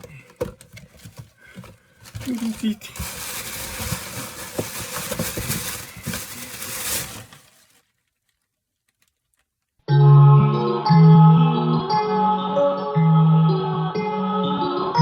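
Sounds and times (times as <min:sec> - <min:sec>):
rustling and scratching with clicks: 0:00.0 - 0:09.8.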